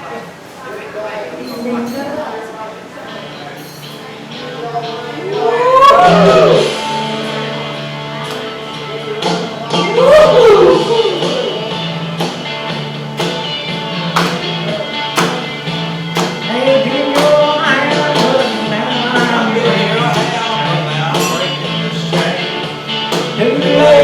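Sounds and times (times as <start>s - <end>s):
live band music: 5.2s - 24.0s
sustained bass line: 9.9s - 24.0s
sharp drum strikes: 12.1s - 24.0s.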